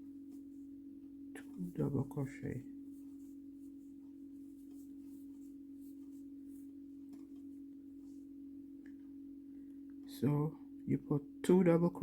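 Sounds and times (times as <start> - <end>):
steady humming tone: 0.0 - 12.0
yarn rustling on crochet hook: 2.9 - 7.4.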